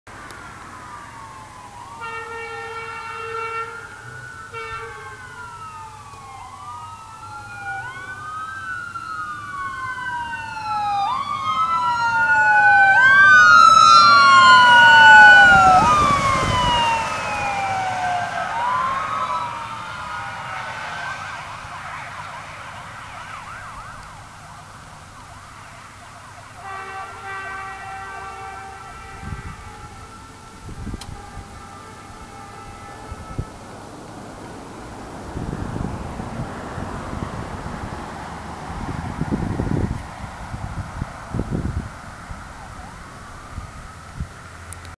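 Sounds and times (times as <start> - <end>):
ambulance siren wailing: 0.2 - 44.9
air horn blast: 2.0 - 3.9, 4.5 - 5.2, 26.6 - 33.8.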